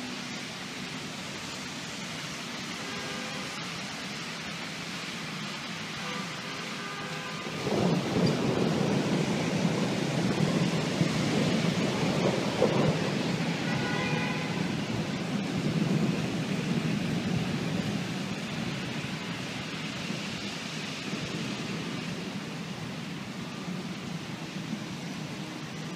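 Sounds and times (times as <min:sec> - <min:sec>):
rain hissing: 0:00.0 - 0:25.9
rolling thunder: 0:07.4 - 0:20.4.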